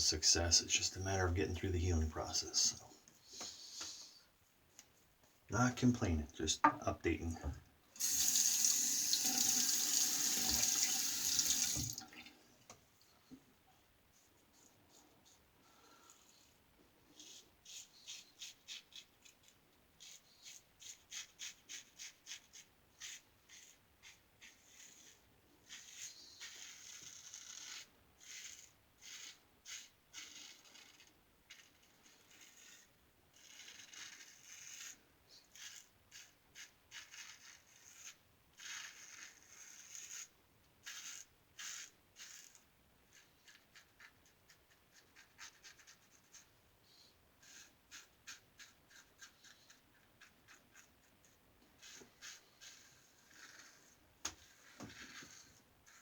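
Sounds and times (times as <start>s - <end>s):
razor scraping stubble: 20.4s - 42.6s.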